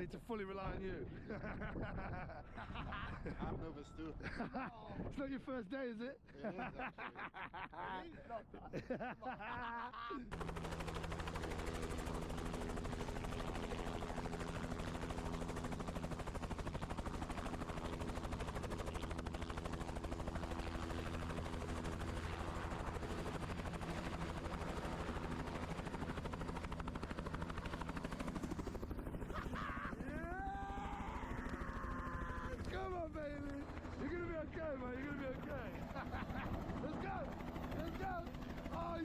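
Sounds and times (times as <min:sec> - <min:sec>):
helicopter engine hum: 0:10.3 - 0:39.0
helicopter rotor chopping: 0:10.3 - 0:39.0.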